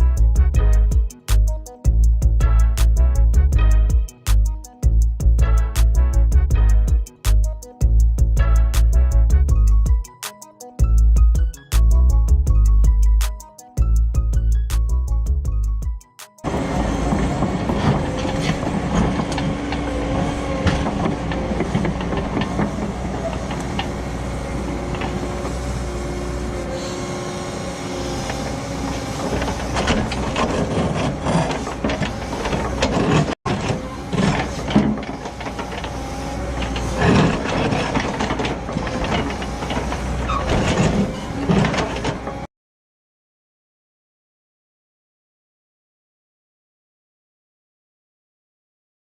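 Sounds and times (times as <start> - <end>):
excavator diesel engine under load: 16.4 - 42.5
ripper scraping and cracking rock: 29.3 - 35.8.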